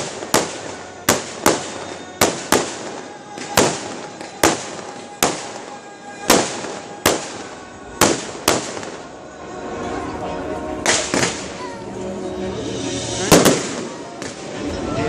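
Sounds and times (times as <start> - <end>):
fireworks bangs: 0.0 - 9.4, 10.8 - 11.7, 13.2 - 14.9.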